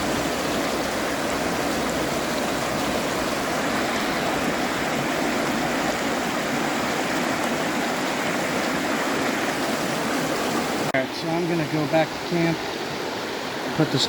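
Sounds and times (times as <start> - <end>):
river water rushing over rocks: 0.0 - 14.0.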